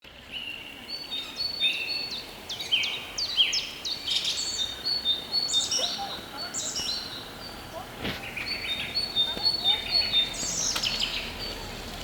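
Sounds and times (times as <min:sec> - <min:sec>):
birds chirping: 0:00.2 - 0:12.0.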